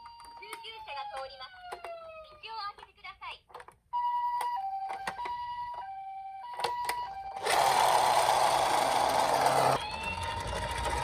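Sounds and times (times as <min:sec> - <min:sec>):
toy two-tone siren beeps: 0:00.0 - 0:02.4
plastic clicks: 0:02.7 - 0:03.8
steady whirring rattle: 0:07.4 - 0:11.0.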